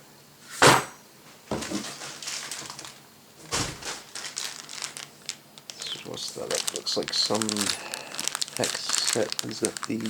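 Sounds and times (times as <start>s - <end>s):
packaging rustling: 1.5s - 10.0s.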